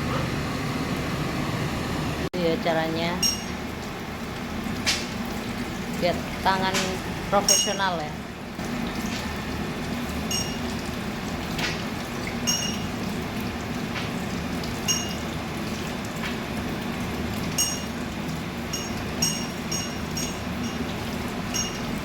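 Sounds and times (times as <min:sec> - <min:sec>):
gas burner hum: 0:00.0 - 0:22.0
metallic clinks on wok: 0:17.5 - 0:18.0, 0:18.7 - 0:20.9, 0:21.5 - 0:22.0.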